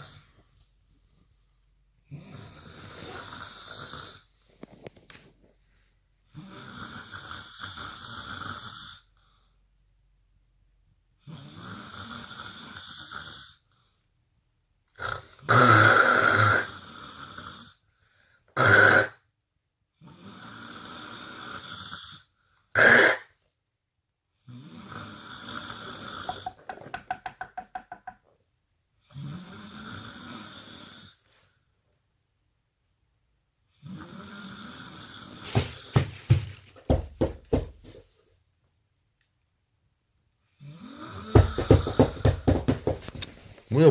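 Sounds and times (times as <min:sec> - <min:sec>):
person snoring: 0:02.0 - 0:04.3, 0:06.3 - 0:09.1, 0:11.2 - 0:13.6, 0:15.0 - 0:17.8, 0:20.0 - 0:23.3, 0:24.4 - 0:28.1, 0:29.0 - 0:31.3, 0:33.8 - 0:36.1, 0:40.6 - 0:42.5
loud snorts: 0:02.1 - 0:04.3, 0:06.3 - 0:09.0, 0:15.0 - 0:17.8, 0:18.6 - 0:19.2, 0:20.0 - 0:23.3, 0:33.8 - 0:36.0.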